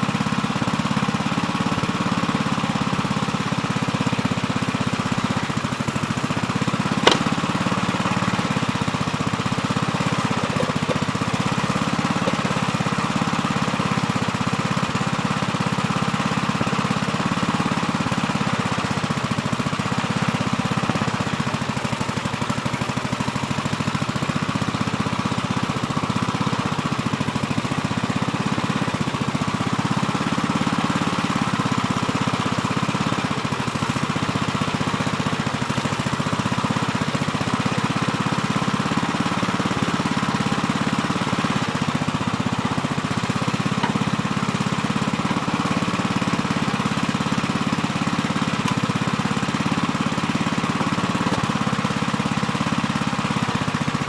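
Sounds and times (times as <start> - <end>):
backhoe engine running: 0.0 - 54.0
sharp knock: 7.0 - 7.5.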